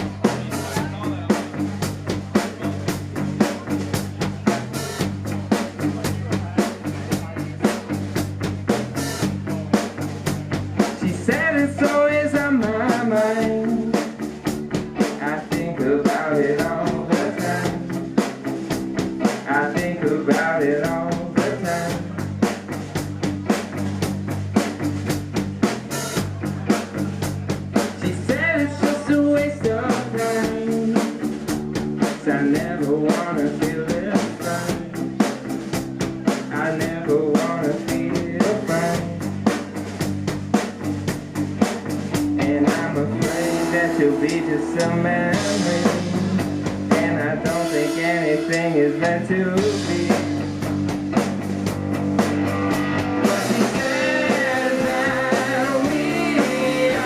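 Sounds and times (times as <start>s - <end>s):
drum kit beat: 0.0s - 57.0s
electric guitar: 0.0s - 57.0s
person singing: 10.8s - 18.0s, 19.3s - 22.3s, 28.0s - 31.2s, 32.0s - 35.0s, 36.5s - 39.4s, 42.4s - 50.5s, 53.2s - 57.0s.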